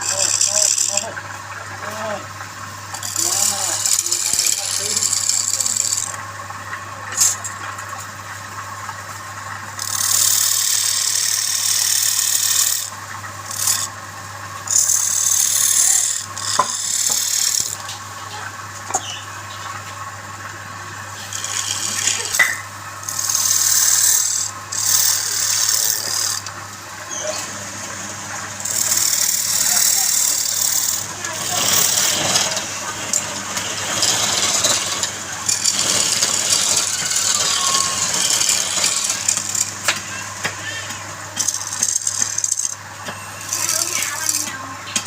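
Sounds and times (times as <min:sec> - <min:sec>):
wood being scraped by hand: 0:21.2 - 0:22.4, 0:31.3 - 0:39.7, 0:41.4 - 0:44.6.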